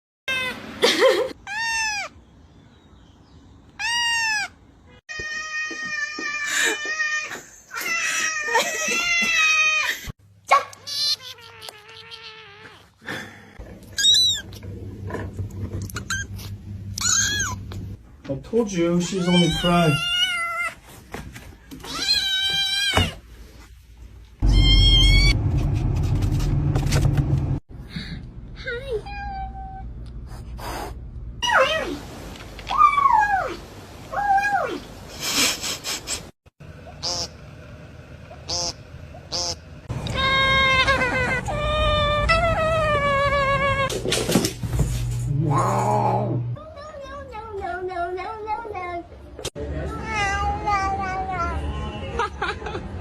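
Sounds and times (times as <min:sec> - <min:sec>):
cat meowing: 0:10.9 - 0:12.9, 0:24.4 - 0:25.4.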